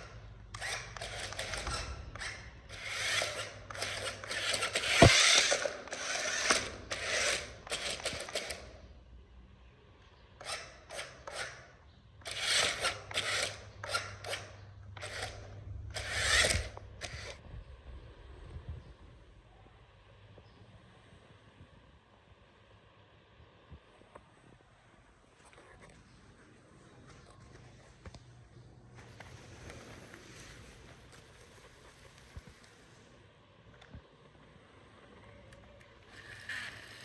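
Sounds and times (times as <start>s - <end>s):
plastic toy parts clicking and rattling: 0.0s - 8.7s, 35.6s - 37.0s.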